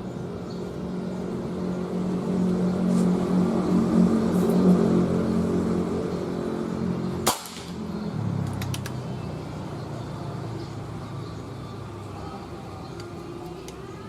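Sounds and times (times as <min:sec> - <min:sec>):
engine humming: 0:00.0 - 0:14.0
air rifle shot: 0:07.2 - 0:07.8.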